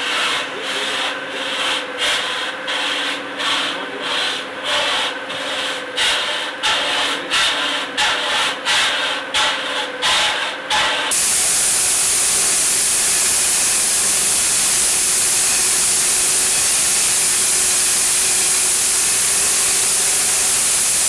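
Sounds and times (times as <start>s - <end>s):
sanding machine rubbing: 11.1s - 21.0s.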